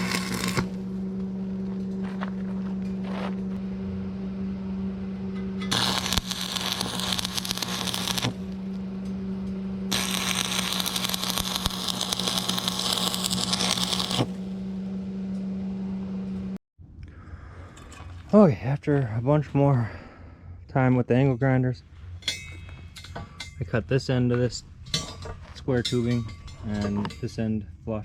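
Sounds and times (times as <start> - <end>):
angle grinder whining: 0.0 - 1.0, 5.6 - 8.8, 9.9 - 14.4
grinder disc grinding steel: 0.0 - 1.0, 5.6 - 8.6, 9.9 - 14.4.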